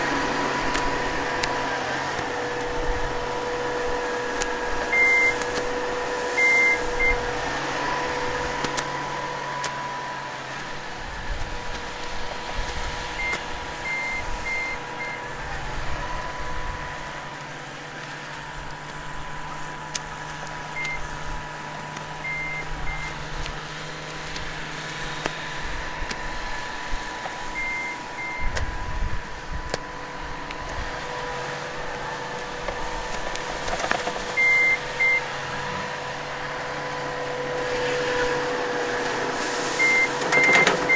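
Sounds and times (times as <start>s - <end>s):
heavy machinery rumbling: 0.0s - 40.9s
short high beeps: 4.9s - 5.5s, 6.4s - 7.3s, 13.2s - 15.2s, 20.8s - 21.0s, 22.2s - 23.2s, 27.6s - 28.6s, 34.3s - 35.2s, 39.8s - 40.9s.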